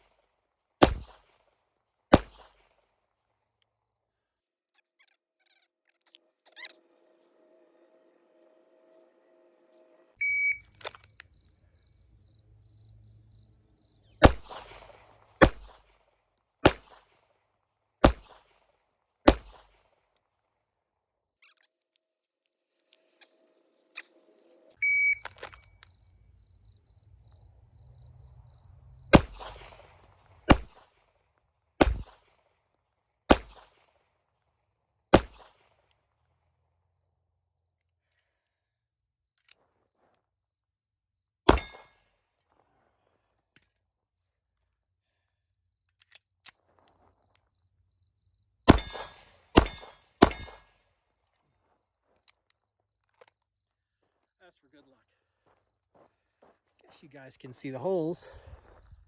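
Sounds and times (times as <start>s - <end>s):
pistol shots: 0.8s - 1.4s, 2.1s - 2.7s, 14.1s - 16.0s, 16.6s - 17.2s, 18.0s - 18.6s, 19.2s - 19.8s, 29.0s - 30.9s, 31.8s - 32.3s, 33.3s - 33.9s, 35.1s - 35.7s, 41.5s - 42.0s, 48.7s - 50.8s
short high electronic beep: 10.2s - 10.8s, 24.8s - 25.7s.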